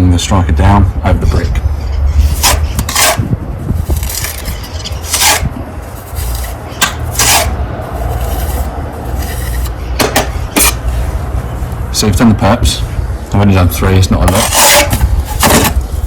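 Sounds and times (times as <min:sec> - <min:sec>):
steady low rumble: 0:00.0 - 0:16.0
trowel scraping mortar into joints: 0:01.3 - 0:09.8, 0:10.5 - 0:11.1, 0:14.2 - 0:16.0.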